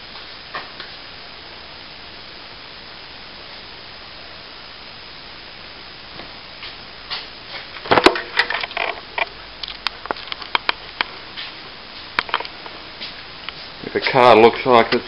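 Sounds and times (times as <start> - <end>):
small pieces clicking and snapping: 7.8 - 11.1.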